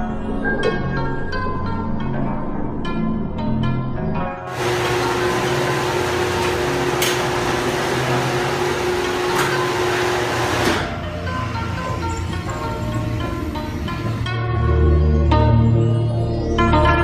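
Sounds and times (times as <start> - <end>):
motor-driven machine whirring: 4.5 - 14.3.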